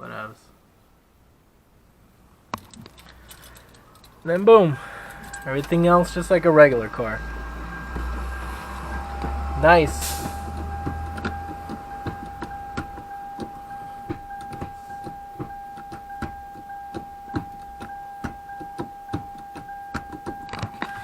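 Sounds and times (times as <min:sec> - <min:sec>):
gear shifter clicks and clunks: 0:02.5 - 0:21.0
steady high tone: 0:04.3 - 0:21.0.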